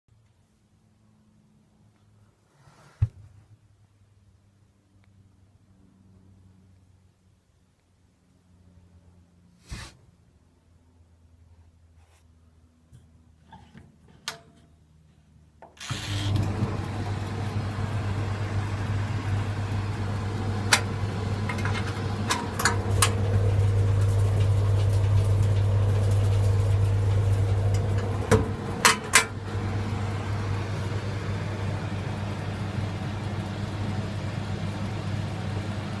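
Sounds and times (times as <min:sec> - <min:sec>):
clothes dryer humming and tumbling: 0:15.8 - 0:36.0.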